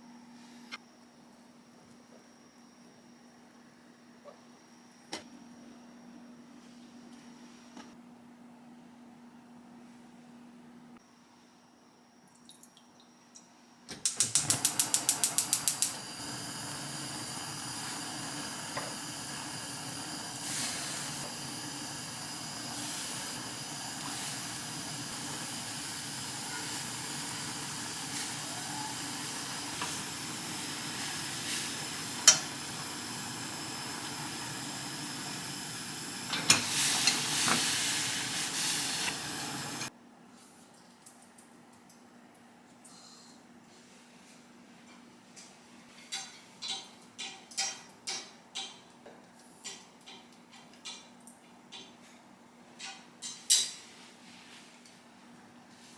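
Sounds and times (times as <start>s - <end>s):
gas stove igniter clicking: 13.9s - 20.4s, 21.0s - 39.9s
gas burner hissing: 14.0s - 39.9s.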